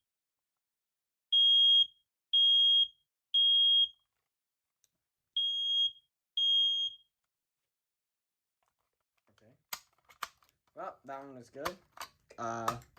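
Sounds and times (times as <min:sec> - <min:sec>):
smoke alarm beeping: 0:01.3 - 0:04.0, 0:05.4 - 0:07.1.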